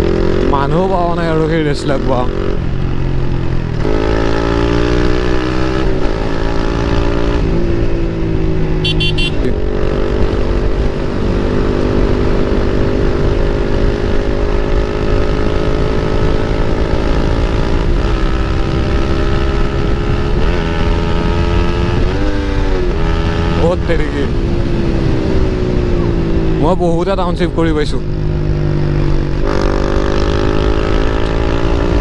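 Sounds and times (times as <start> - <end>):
motorcycle engine running: 2.0 - 26.6.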